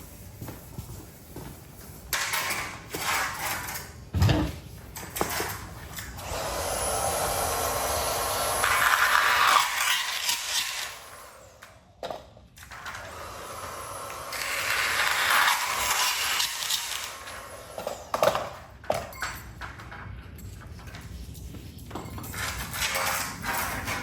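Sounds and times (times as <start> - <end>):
tools scraping door hardware: 21.9 - 24.0.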